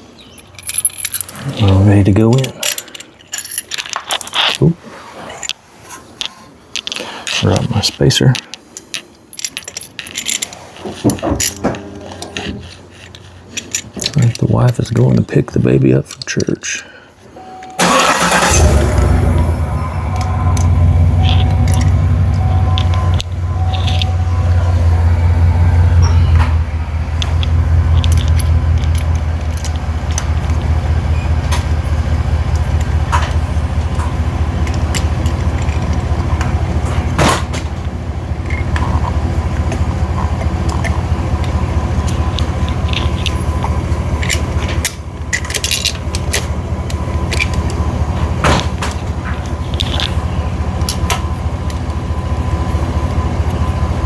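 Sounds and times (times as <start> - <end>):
car engine idling: 17.8 - 54.0
sharp clicks and knocks: 26.0 - 52.0.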